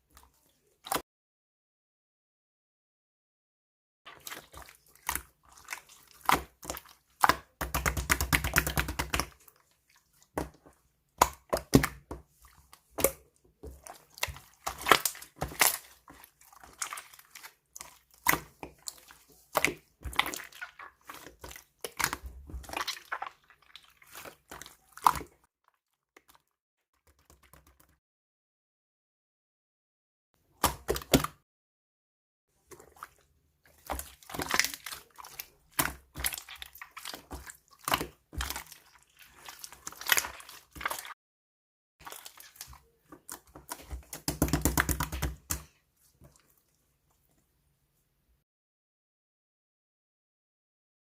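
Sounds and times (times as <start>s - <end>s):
hands squishing slime: 4.1s - 25.4s, 30.5s - 31.4s, 32.6s - 41.2s, 42.0s - 47.2s.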